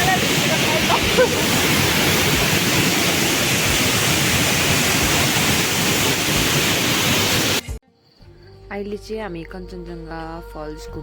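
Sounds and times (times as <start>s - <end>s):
waterfall rushing: 0.0s - 7.8s.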